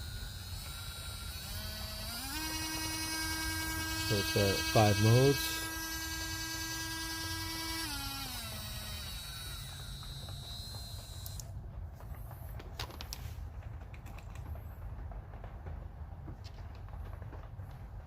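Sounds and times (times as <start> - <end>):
rotary tool motor whining: 0.0 - 11.5.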